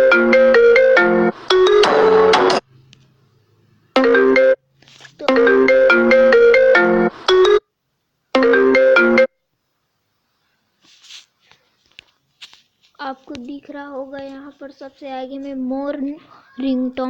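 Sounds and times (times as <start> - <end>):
phone ringtone melodies: 0.0 - 2.6, 4.0 - 7.7, 8.4 - 9.4.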